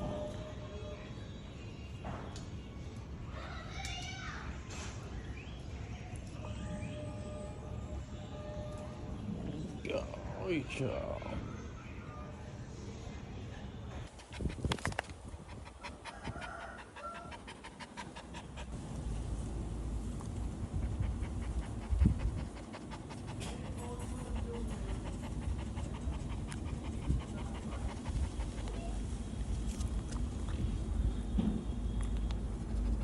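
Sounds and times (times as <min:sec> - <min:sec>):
dog panting: 0:14.0 - 0:18.8, 0:20.2 - 0:29.7, 0:32.4 - 0:33.0
thump: 0:31.3 - 0:31.7.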